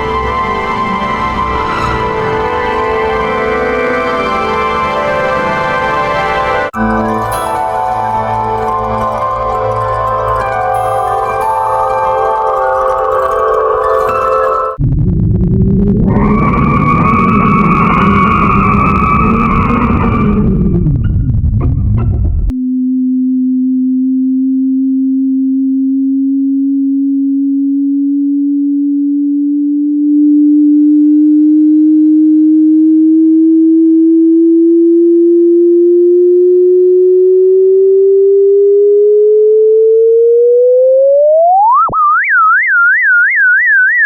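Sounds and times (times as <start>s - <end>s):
electronic tone rising in pitch: 0.0s - 21.0s, 22.5s - 44.0s
noisy rumble: 14.8s - 23.9s.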